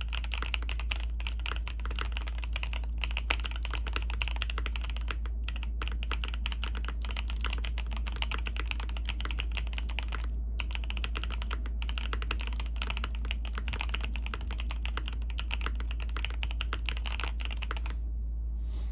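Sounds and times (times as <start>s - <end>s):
typing on mechanical keyboard: 0.0s - 18.0s
steady low hum: 0.0s - 18.9s.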